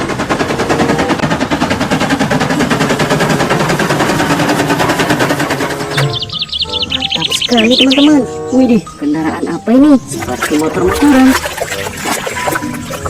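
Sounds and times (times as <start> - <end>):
rapid rattle of sharp clicks: 0.0 - 6.5.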